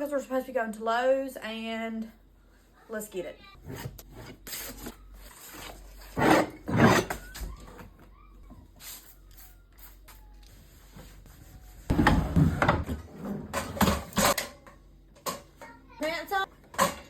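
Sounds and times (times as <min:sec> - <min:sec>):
knocks and rustling: 0:11.8 - 0:14.4.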